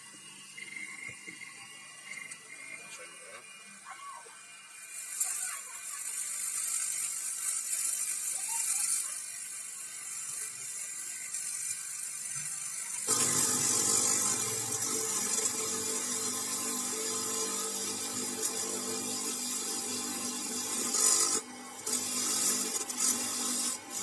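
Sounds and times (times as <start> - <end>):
mechanical hum: 0.0 - 24.0
shredding machine running: 12.7 - 24.0.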